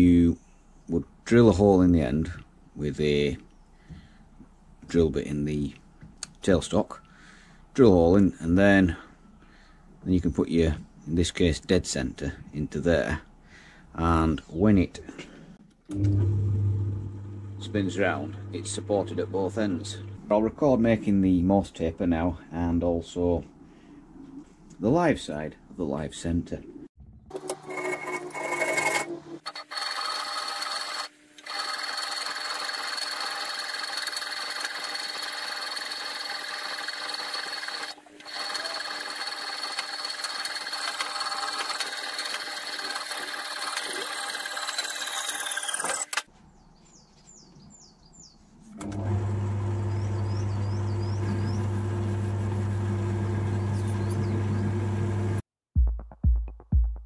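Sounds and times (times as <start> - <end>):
low motor hum: 15.9 - 20.3, 48.8 - 55.4
metal lathe machining: 27.4 - 46.2.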